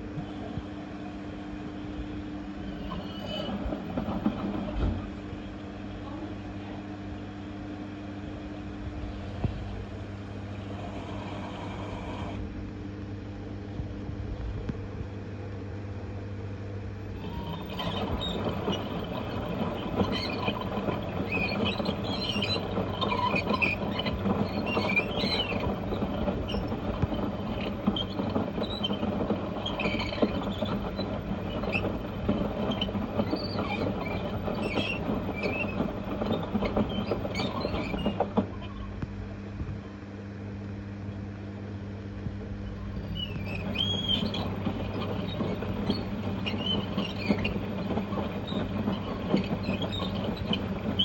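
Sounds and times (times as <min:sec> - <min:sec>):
washing machine drum grinding: 0:02.5 - 0:05.2, 0:17.0 - 0:38.8, 0:42.8 - 0:51.0
high squeals: 0:02.6 - 0:04.5, 0:17.1 - 0:39.0, 0:42.6 - 0:51.0.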